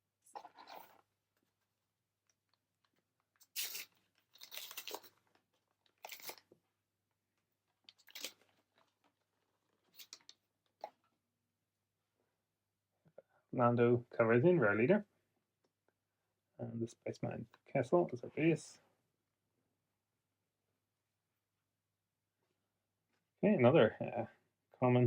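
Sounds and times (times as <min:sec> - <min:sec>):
wrapper tearing and crinkling: 0:03.4 - 0:05.2, 0:06.0 - 0:06.4, 0:07.9 - 0:08.5.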